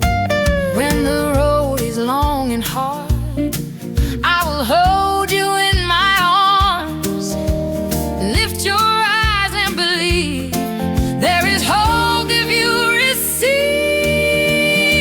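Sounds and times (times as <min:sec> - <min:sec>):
instrumental backing: 0:00.0 - 0:15.0.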